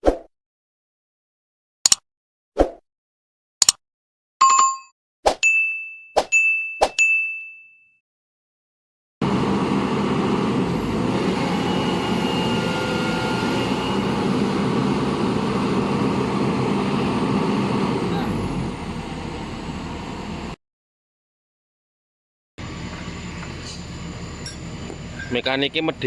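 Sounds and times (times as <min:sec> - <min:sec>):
excavator diesel engine running: 0:09.2 - 0:20.6, 0:22.6 - 0:26.0.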